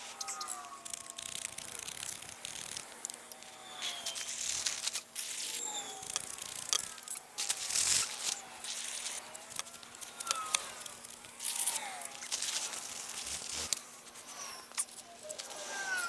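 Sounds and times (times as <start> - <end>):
birds chirping: 5.6 - 7.0.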